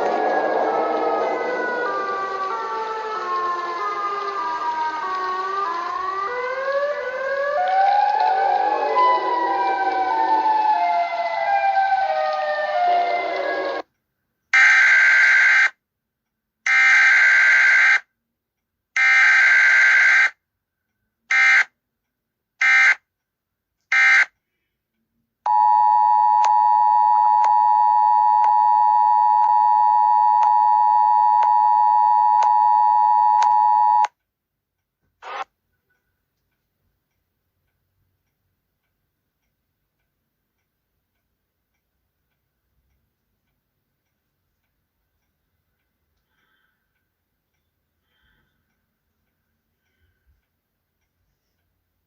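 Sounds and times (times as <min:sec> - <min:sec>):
wailing siren: 0:00.0 - 0:13.8
harsh alarm blasts: 0:21.3 - 0:21.7, 0:22.6 - 0:23.0, 0:23.9 - 0:24.3
buzzing alarm tone: 0:22.6 - 0:23.0, 0:23.9 - 0:24.3
faint regular clicks: 0:33.4 - 0:52.0.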